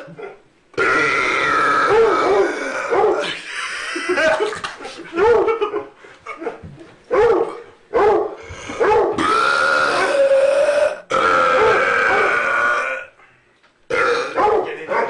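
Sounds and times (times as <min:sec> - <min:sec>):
men burping: 0:00.0 - 0:04.9, 0:09.2 - 0:13.2, 0:13.9 - 0:14.4.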